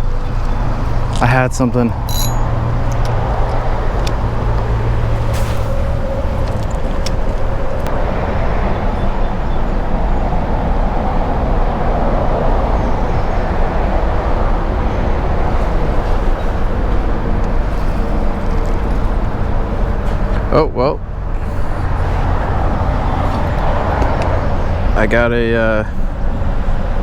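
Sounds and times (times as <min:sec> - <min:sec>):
highway traffic rumble: 0:00.0 - 0:27.0.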